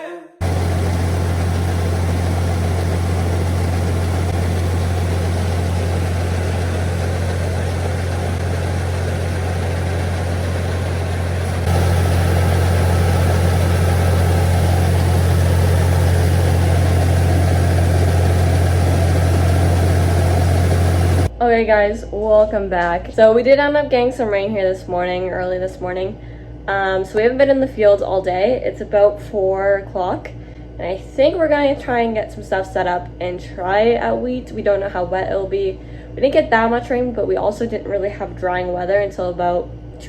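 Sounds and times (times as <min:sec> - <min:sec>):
heavy engine running: 0:00.4 - 0:21.4.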